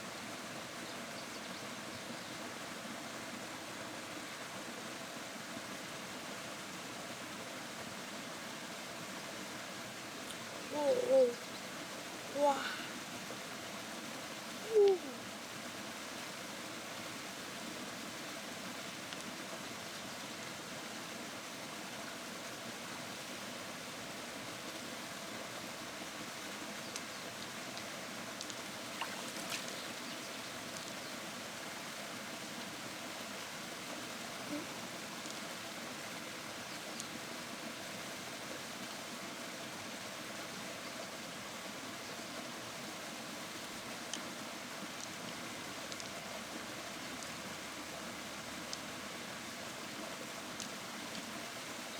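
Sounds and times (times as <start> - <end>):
river water rushing: 5.9 - 26.7, 27.4 - 51.9
faint clicks: 26.9 - 29.8, 44.9 - 46.2, 47.1 - 47.4, 48.6 - 48.9, 50.5 - 51.3.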